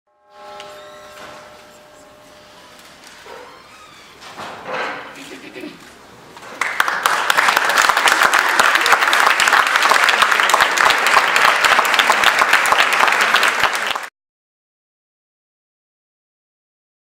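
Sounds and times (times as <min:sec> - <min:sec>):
audience applauding: 0:06.5 - 0:14.1.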